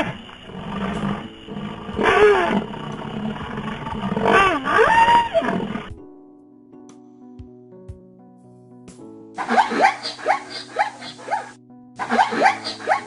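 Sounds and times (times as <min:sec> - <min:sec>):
large animal calling: 0:00.0 - 0:05.9, 0:09.4 - 0:13.0.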